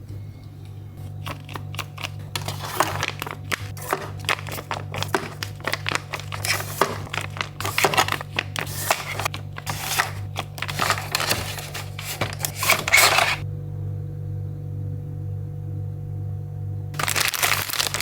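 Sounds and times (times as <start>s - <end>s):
steady low hum: 0.0s - 18.0s
plastic packaging crinkling: 1.0s - 13.4s, 17.0s - 18.0s.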